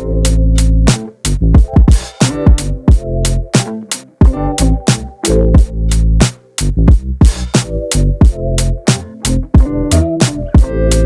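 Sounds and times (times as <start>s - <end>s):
bass line: 0.0s - 3.6s, 4.2s - 11.0s
hi-hats and snares: 0.0s - 11.0s
kick drums: 0.9s - 3.1s, 4.2s - 4.5s, 5.5s - 5.8s, 6.9s - 7.6s, 8.2s - 8.5s, 9.6s - 10.8s.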